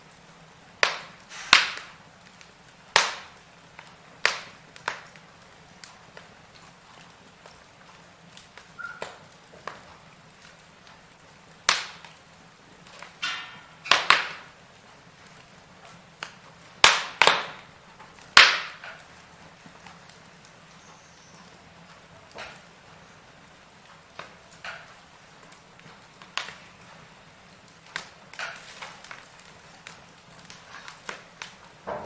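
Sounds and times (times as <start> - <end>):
faint steady hiss: 0.0 - 32.0
wood fire crackling: 0.0 - 32.0
sharp loud pops: 0.8 - 1.9.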